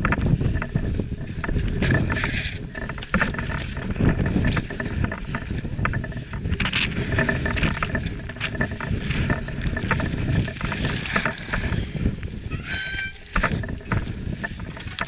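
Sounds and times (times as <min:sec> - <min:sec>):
bike rattling and clicking: 0:00.0 - 0:15.0
bike tyres rumbling on gravel: 0:00.0 - 0:15.0
wind on microphone: 0:00.0 - 0:15.0.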